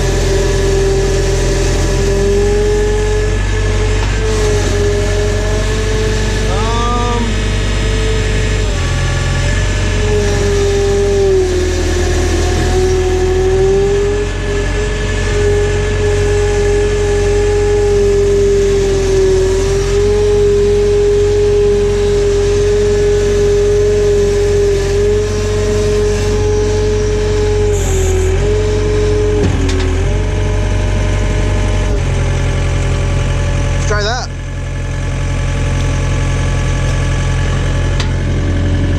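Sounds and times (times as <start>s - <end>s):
steady engine whine: 0.0s - 38.9s
tractor engine running: 0.0s - 38.9s.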